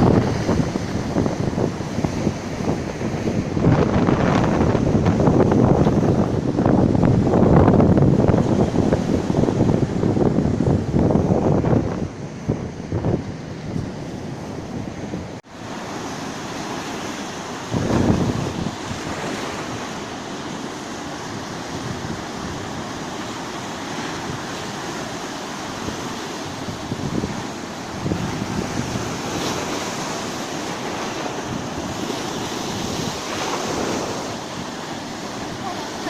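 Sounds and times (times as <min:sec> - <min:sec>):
sea surf washing onto shore: 0:00.0 - 0:36.0
wind buffeting microphone: 0:00.0 - 0:36.0.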